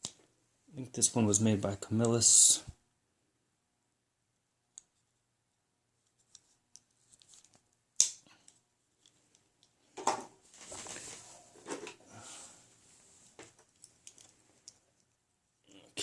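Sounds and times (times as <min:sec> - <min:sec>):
rustling and scraping: 0:09.0 - 0:15.1.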